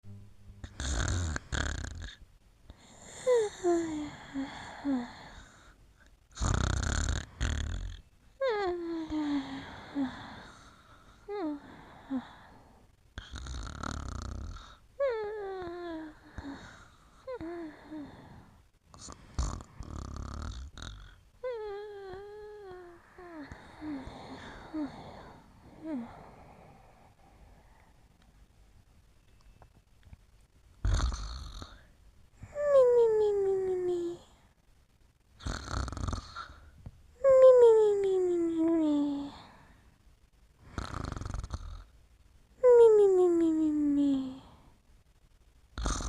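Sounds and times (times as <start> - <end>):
soft snoring: 0.5 - 28.3, 30.8 - 32.8, 35.4 - 36.8, 40.6 - 42.0, 45.7 - 46.0
whimpers in sleep: 2.8 - 5.7, 6.4 - 27.0, 32.4 - 34.4.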